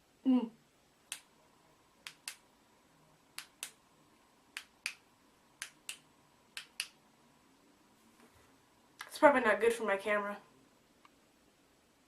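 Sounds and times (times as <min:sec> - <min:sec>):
sharp short clicks in pairs: 0:06.6 - 0:07.0.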